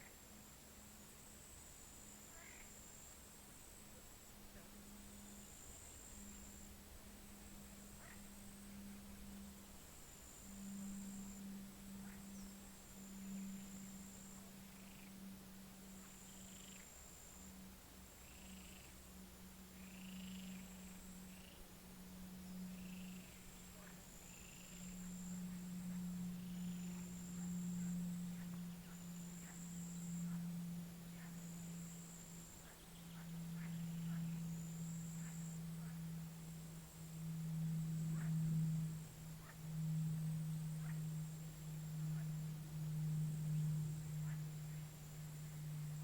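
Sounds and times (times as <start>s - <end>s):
frogs croaking: 0.0s - 46.0s
short higher frog calls: 2.2s - 2.8s, 7.9s - 8.4s, 19.7s - 21.6s, 31.1s - 45.6s.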